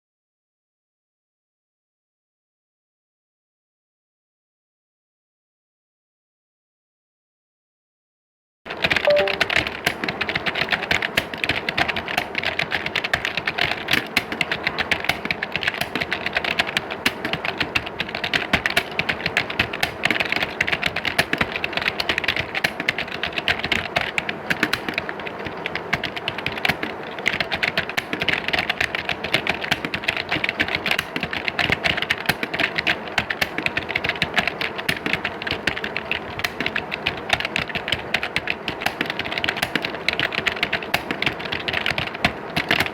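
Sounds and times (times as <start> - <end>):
keyboards typing: 8.8 - 42.9.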